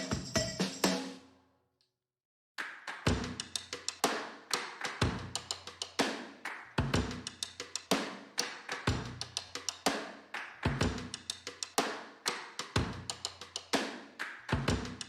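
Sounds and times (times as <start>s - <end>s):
instrumental groove with drums: 0.0s - 1.2s, 6.8s - 10.1s.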